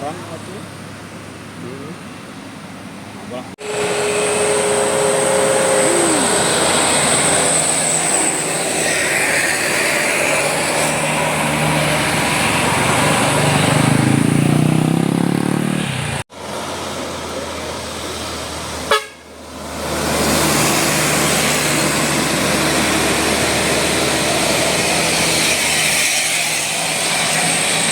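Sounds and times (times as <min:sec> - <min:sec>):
road and engine noise: 0:00.0 - 0:27.9
bus melody horn: 0:03.6 - 0:07.2, 0:18.9 - 0:19.3.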